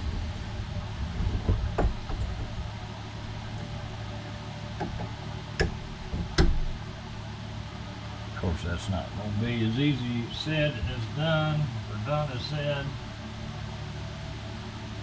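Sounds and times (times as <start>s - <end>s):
low machine hum: 0.0s - 15.0s
metal engine parts clunking: 4.7s - 6.8s.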